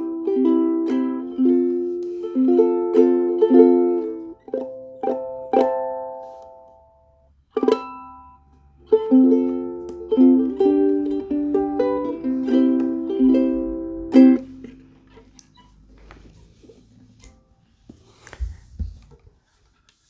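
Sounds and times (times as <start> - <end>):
ukulele chords: 0.0 - 15.7.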